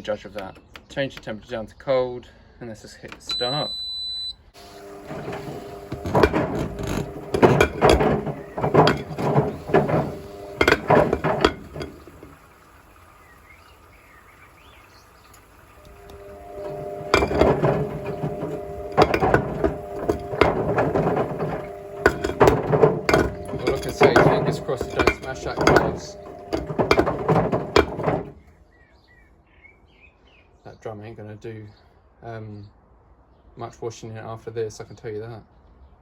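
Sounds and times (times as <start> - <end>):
bricks clattering in washing machine drum: 4.6 - 13.1, 15.7 - 28.4
drum motor hum: 4.6 - 28.4.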